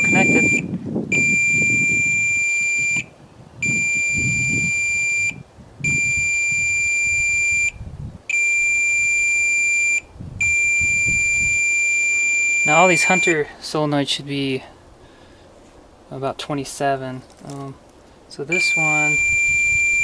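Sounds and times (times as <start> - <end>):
multimeter continuity beeps: 0.0 - 13.5, 18.5 - 20.0.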